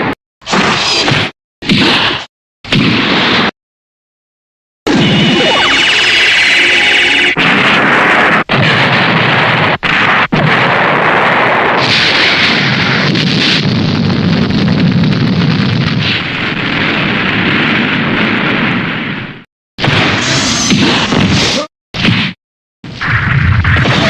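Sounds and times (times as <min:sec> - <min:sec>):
explosion sound effects: 0:04.9 - 0:24.0
deep rumbling blast: 0:06.8 - 0:20.3.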